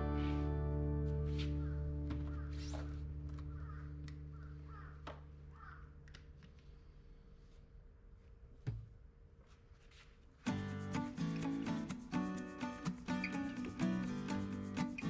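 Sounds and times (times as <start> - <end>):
music chord ringing out: 0.0 - 2.6.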